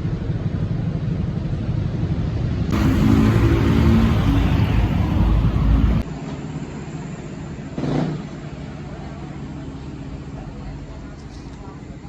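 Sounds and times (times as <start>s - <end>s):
high engine note: 2.7s - 6.0s
road noise: 2.7s - 6.1s
motorcycle engines running: 2.8s - 6.0s.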